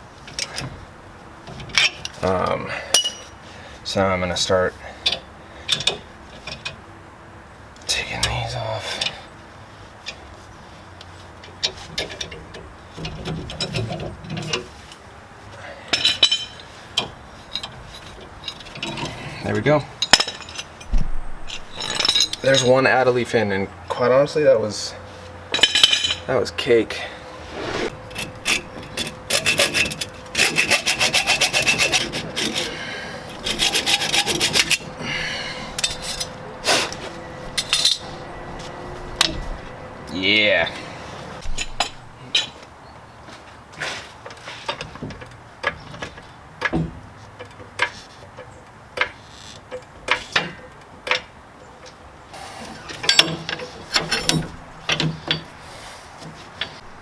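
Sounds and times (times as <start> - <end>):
metal tools clinking: 2.9 - 3.4, 15.9 - 16.6, 20.0 - 22.9, 27.9 - 39.4, 40.8 - 42.6, 52.9 - 55.6.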